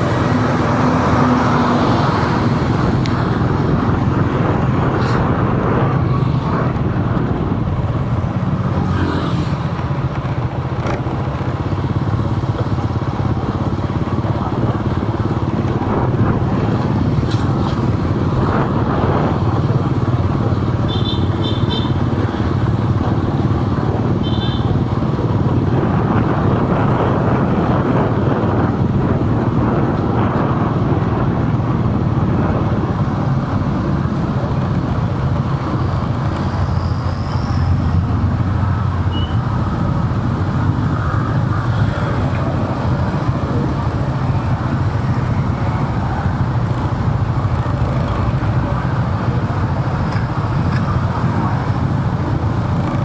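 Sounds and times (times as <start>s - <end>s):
vehicle engine and road noise: 0.0s - 53.0s.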